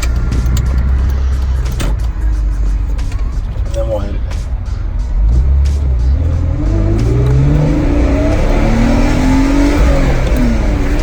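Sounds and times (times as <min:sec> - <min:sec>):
car engine accelerating hard: 0:00.0 - 0:11.0.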